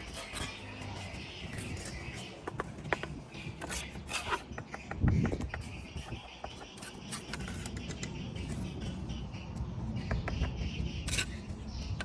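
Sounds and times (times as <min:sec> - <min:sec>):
trowel scraping: 0:00.0 - 0:04.6, 0:11.0 - 0:11.5.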